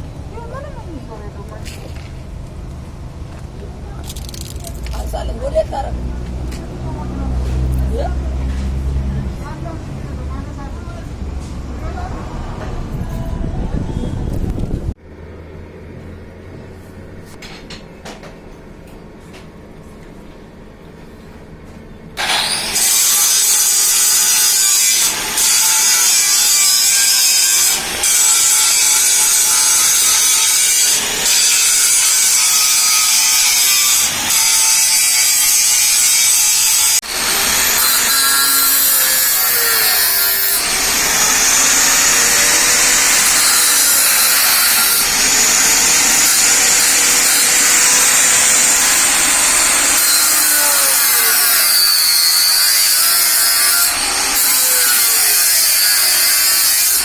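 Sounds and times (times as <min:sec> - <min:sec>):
power tool grinding metal: 0:22.2 - 0:57.0.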